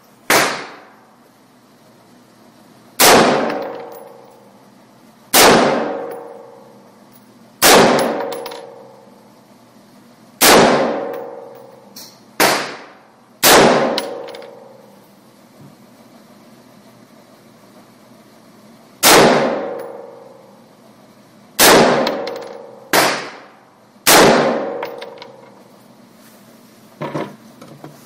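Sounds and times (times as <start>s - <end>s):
rifle shots with ringing echo: 0.3s - 1.0s, 3.0s - 4.2s, 5.3s - 6.7s, 7.6s - 9.0s, 10.4s - 11.8s, 12.4s - 14.8s, 19.0s - 20.3s, 21.6s - 23.5s, 24.1s - 25.2s.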